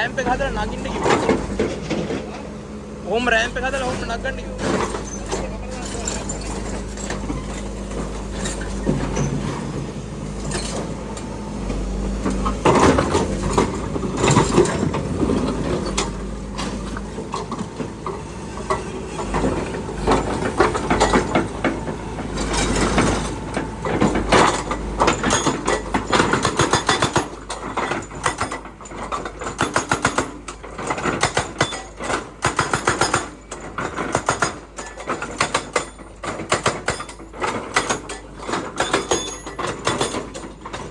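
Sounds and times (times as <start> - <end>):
excavator engine running: 0.0 - 40.9
metallic clanks and knocks: 0.9 - 2.6, 10.4 - 40.9.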